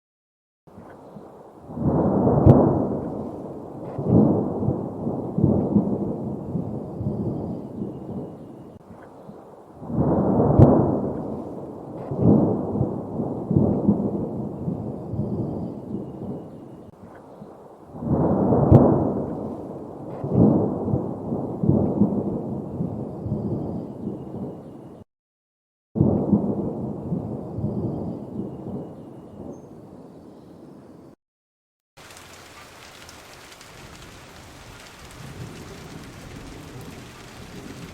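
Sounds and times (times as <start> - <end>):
storm rumble: 0.8 - 8.6, 9.2 - 16.5, 17.9 - 24.6, 26.0 - 29.6, 32.0 - 37.9
sharp thunder crack: 1.7 - 7.5, 9.8 - 15.3, 18.0 - 22.6, 26.0 - 28.9, 33.5 - 37.9.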